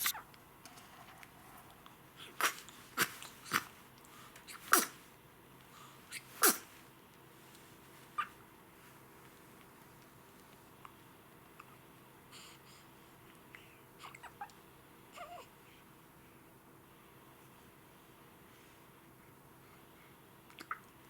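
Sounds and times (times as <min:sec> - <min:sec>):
baby sneezing: 0:02.2 - 0:03.7, 0:04.5 - 0:05.0, 0:06.1 - 0:06.7.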